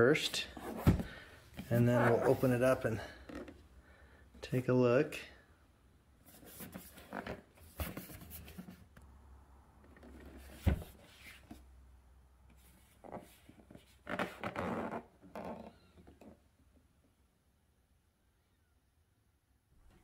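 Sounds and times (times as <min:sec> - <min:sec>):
cardboard rustling and scraping: 0:00.4 - 0:03.6, 0:06.2 - 0:08.9, 0:10.0 - 0:11.6.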